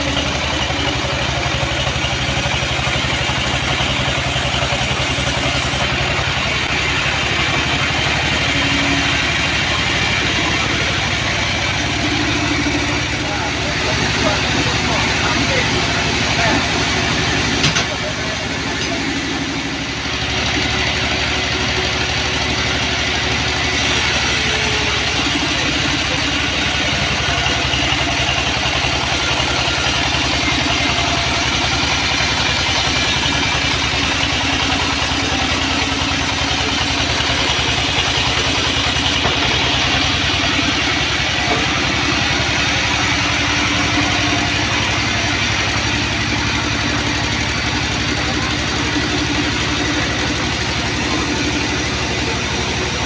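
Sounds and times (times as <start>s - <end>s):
sawmill machine hum: 0.0s - 53.0s
saw blade rasping through log: 1.6s - 6.1s, 23.7s - 40.1s.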